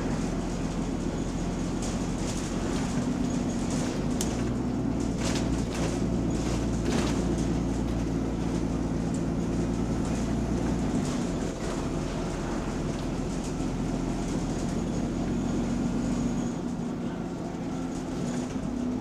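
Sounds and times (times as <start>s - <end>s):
diesel bus engine running: 0.0s - 19.0s.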